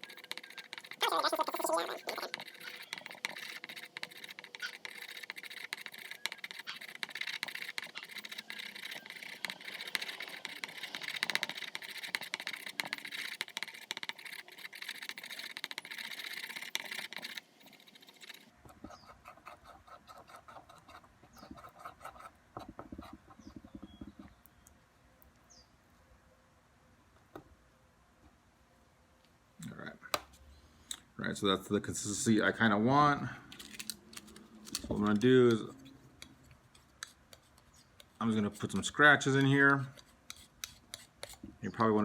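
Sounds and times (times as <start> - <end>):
stick scraping epoxy: 0.0 - 24.4, 34.2 - 42.0.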